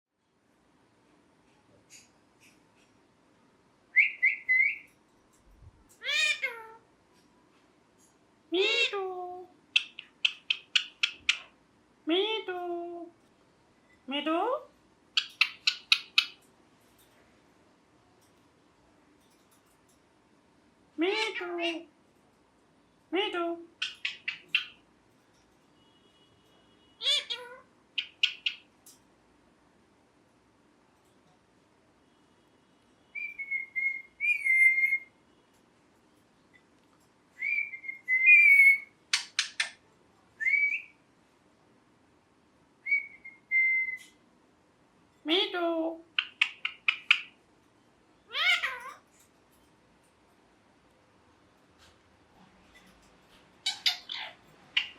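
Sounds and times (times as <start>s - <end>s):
parrot chirps: 3.9s - 4.9s, 6.0s - 6.8s, 9.7s - 11.6s, 15.1s - 16.4s, 23.7s - 24.8s, 26.9s - 28.8s, 33.1s - 35.2s, 37.4s - 39.8s, 40.4s - 41.0s, 42.8s - 44.2s, 46.0s - 47.4s, 48.2s - 49.2s, 53.6s - 54.9s
parrot calling: 4.0s - 4.9s, 6.0s - 6.8s, 8.6s - 9.1s, 9.7s - 11.6s, 15.1s - 16.4s, 21.0s - 21.9s, 23.8s - 24.8s, 27.0s - 28.7s, 33.1s - 35.2s, 37.4s - 39.8s, 40.4s - 41.0s, 42.8s - 44.2s, 45.4s - 47.4s, 48.3s - 49.2s, 53.6s - 54.9s.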